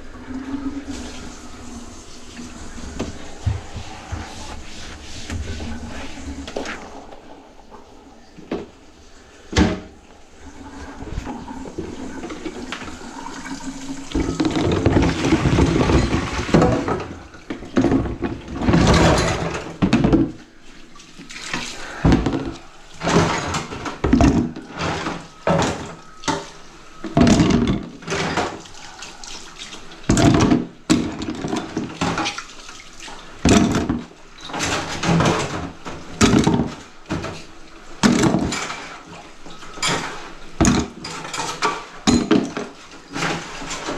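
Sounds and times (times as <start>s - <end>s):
running water in sink: 0.0s - 43.9s
water splashing surges: 20.4s - 24.0s.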